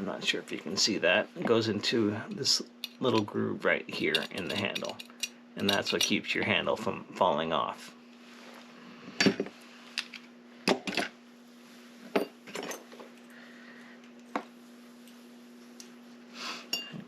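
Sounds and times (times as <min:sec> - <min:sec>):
faint steady hum: 0:00.0 - 0:17.0
metal lock parts clinking: 0:04.1 - 0:06.1.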